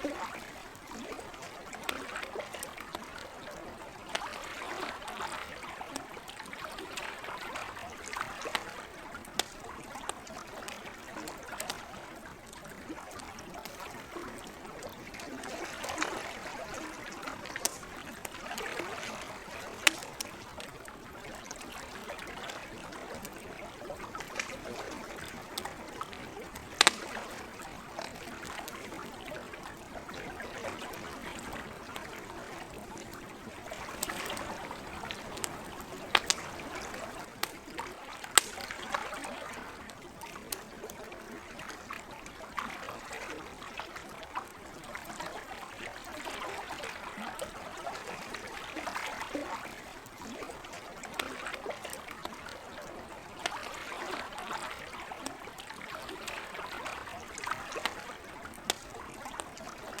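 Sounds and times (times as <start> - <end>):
campfire crackling: 0.0 - 42.5, 43.3 - 60.0
lake water splashing: 0.0 - 60.0
sharp fire pops: 19.2 - 20.4, 26.6 - 27.4, 34.0 - 37.7, 38.3 - 38.7.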